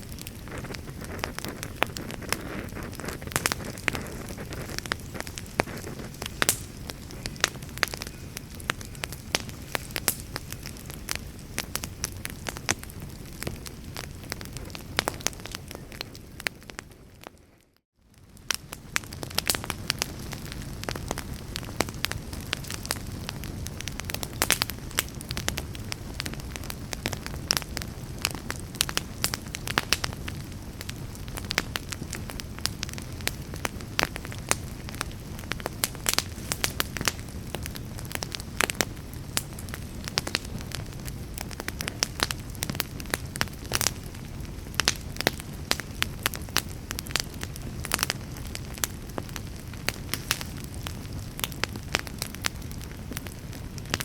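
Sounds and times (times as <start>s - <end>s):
low rumble of flame: 0.0s - 54.0s
wood fire crackling and popping: 0.0s - 54.0s.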